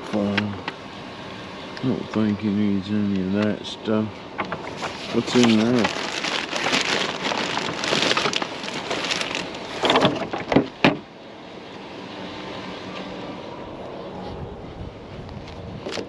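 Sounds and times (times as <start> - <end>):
scrap items rustling and clattering: 4.4 - 11.0.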